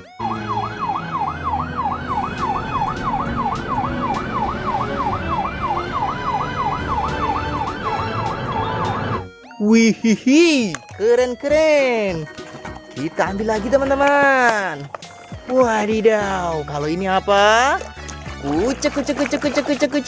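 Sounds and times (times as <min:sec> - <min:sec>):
yelp siren: 0:00.0 - 0:10.1.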